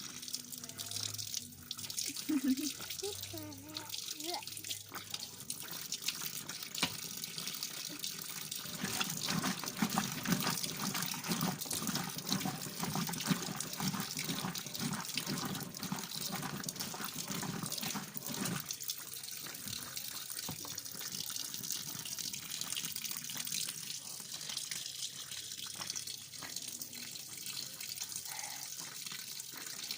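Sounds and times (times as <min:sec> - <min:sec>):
water splashing in washing machine: 0:00.0 - 0:29.9.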